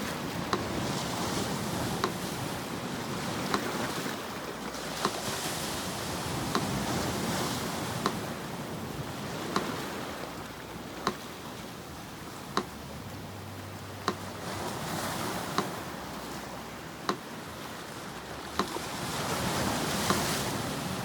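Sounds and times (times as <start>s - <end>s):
sea surf washing: 0.0s - 21.0s
metronome ticking: 0.4s - 0.8s, 1.6s - 2.2s, 6.3s - 8.4s, 9.5s - 17.4s, 18.2s - 21.0s.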